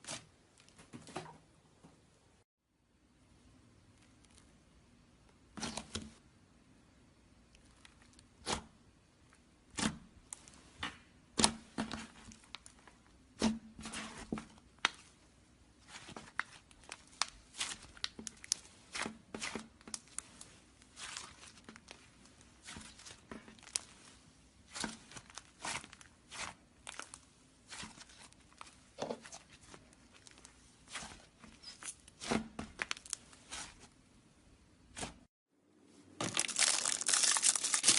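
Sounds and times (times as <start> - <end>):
slime crackling and popping: 36.2 - 37.9.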